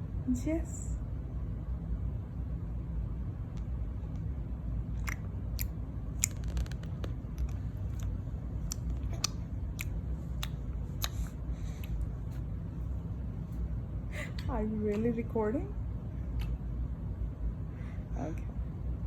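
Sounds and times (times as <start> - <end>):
baby tongue clicks and lip smacks: 5.0 - 12.5, 16.4 - 16.6.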